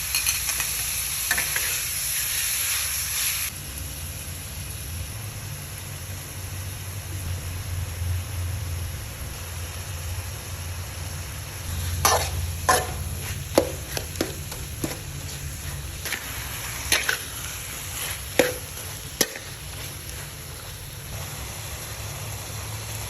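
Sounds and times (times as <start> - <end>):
metal spatula scraping a wok: 0.0 - 2.4, 11.6 - 21.2
steady low hum: 4.3 - 22.6.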